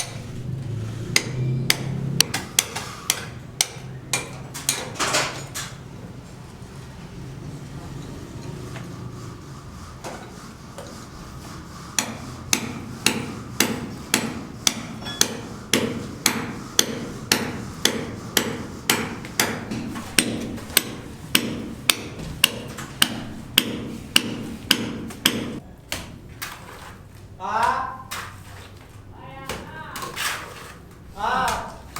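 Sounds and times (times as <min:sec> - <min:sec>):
hammer blows: 0:00.0 - 0:04.4, 0:11.9 - 0:25.6.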